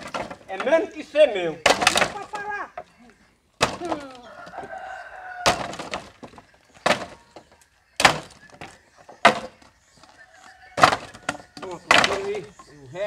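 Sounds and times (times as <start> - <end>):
firewood knocking against wood: 0.0 - 0.9, 1.6 - 2.9, 3.6 - 4.7, 5.4 - 10.1, 10.8 - 12.7.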